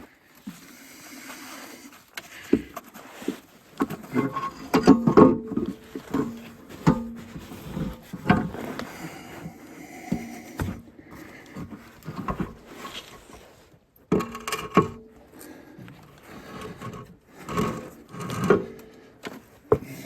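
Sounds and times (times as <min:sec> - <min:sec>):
heavy metal parts knocking and scraping: 0:03.8 - 0:12.7.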